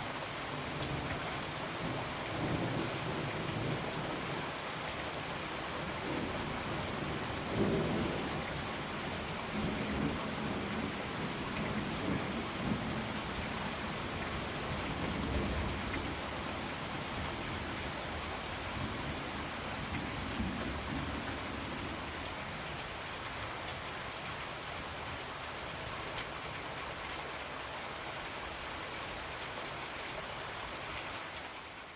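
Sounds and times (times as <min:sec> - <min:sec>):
steady rain falling: 0:00.0 - 0:31.9.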